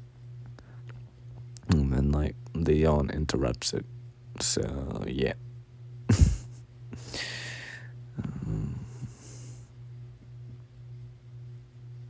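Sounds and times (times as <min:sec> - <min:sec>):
low electrical hum: 0:00.0 - 0:12.0
man yawning: 0:07.0 - 0:09.4.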